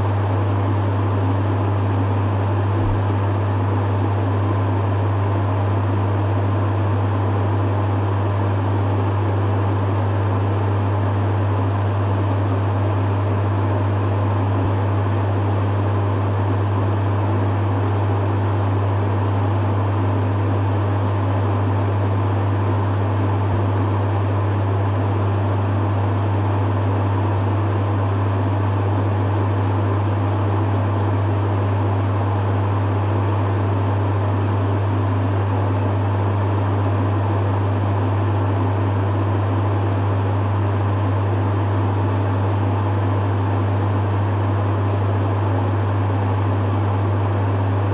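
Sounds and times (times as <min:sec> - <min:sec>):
fan air rushing: 0:00.0 - 0:06.2
dehumidifier humming: 0:00.0 - 0:47.9.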